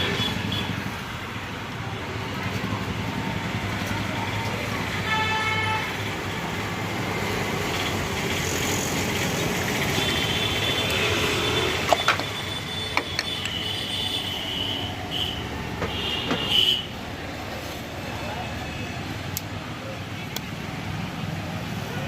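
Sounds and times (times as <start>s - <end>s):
street traffic noise: 0.0s - 22.0s
vehicle horn tooting: 5.0s - 5.9s.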